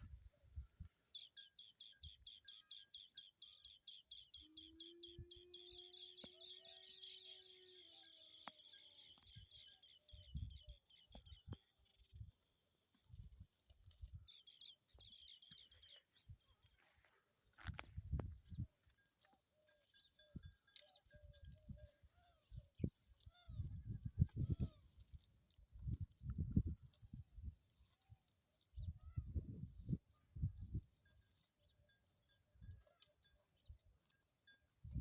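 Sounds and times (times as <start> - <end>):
faint bird trill: 1.0 - 11.6.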